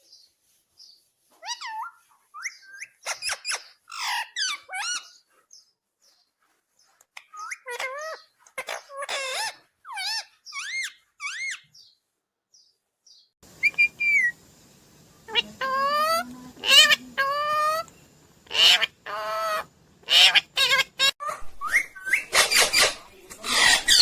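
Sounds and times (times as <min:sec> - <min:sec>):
parakeet harsh squawks: 0:01.4 - 0:05.2, 0:07.4 - 0:11.6, 0:15.3 - 0:17.9, 0:18.5 - 0:24.0
parakeet whistled calls: 0:01.4 - 0:05.2, 0:07.2 - 0:11.6, 0:13.6 - 0:14.4, 0:18.5 - 0:24.0.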